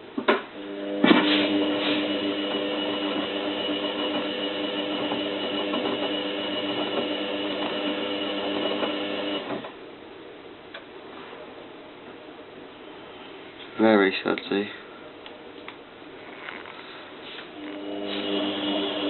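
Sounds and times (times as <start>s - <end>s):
washing machine motor whine: 0.6s - 9.8s, 17.5s - 19.0s.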